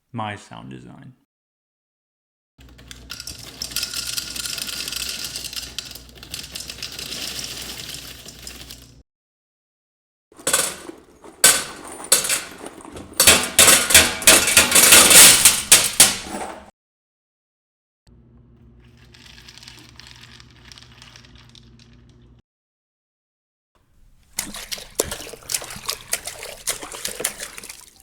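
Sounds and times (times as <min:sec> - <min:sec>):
hard objects clinking against metal: 0:10.4 - 0:16.7.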